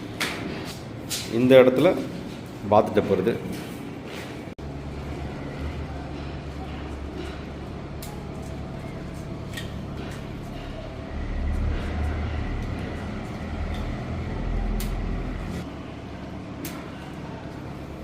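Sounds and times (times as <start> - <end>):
low engine rumble: 4.6 - 18.0.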